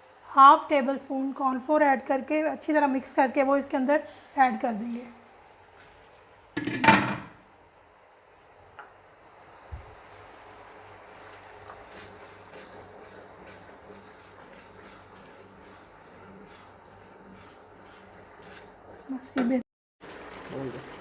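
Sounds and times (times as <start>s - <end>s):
sauce simmering with light ticks: 8.3s - 15.4s.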